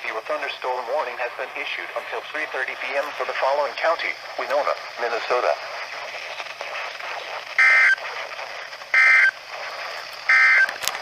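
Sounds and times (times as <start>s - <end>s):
radio hiss: 0.0s - 11.0s
warbling two-tone data bursts: 2.4s - 9.4s, 10.2s - 10.8s.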